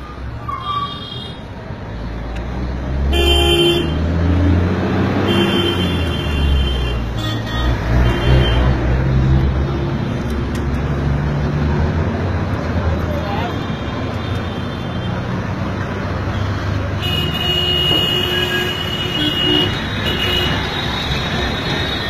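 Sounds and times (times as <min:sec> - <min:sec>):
traffic engines running: 0:00.0 - 0:22.0
vehicle horns honking: 0:03.1 - 0:04.1, 0:05.2 - 0:08.8, 0:16.3 - 0:22.0.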